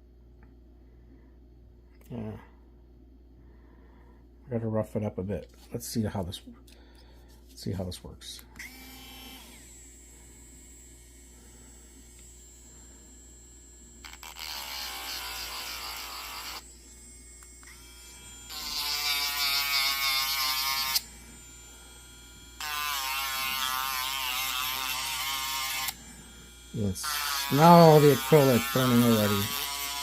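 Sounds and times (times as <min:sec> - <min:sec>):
power tool whine on acrylic: 0:08.6 - 0:30.0.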